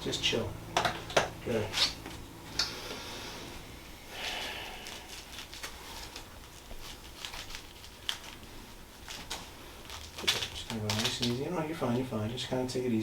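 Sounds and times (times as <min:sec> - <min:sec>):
quiet rustling: 0:04.8 - 0:12.2.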